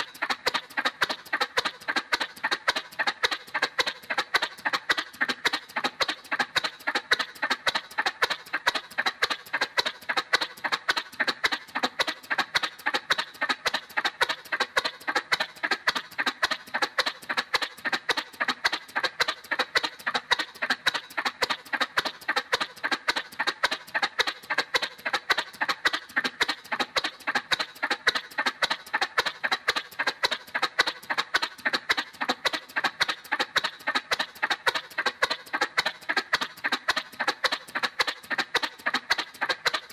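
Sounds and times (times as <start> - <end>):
cartoon motorcycle putt-putt: 0.0 - 39.9.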